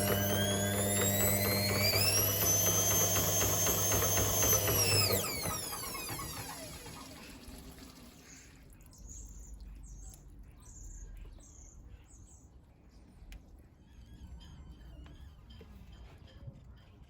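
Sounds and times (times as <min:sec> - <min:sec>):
washing machine running: 0:00.0 - 0:08.6.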